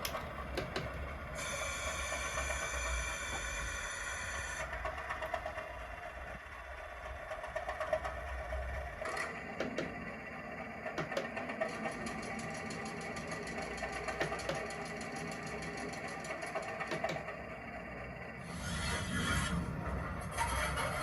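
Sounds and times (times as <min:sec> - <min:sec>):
diesel train sounds from small speaker: 0:00.0 - 0:21.0
fast regular mechanical clatter: 0:04.7 - 0:17.6.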